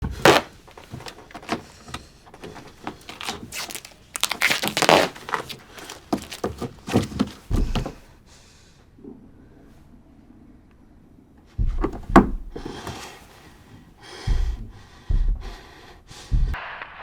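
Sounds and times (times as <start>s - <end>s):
knocks clicks and thuds: 0.0s - 8.0s, 11.6s - 13.6s, 14.2s - 15.6s, 16.3s - 16.6s
scraping and rustling: 0.0s - 8.0s
heavy low thump: 7.1s - 8.0s, 11.6s - 12.9s, 14.2s - 16.6s.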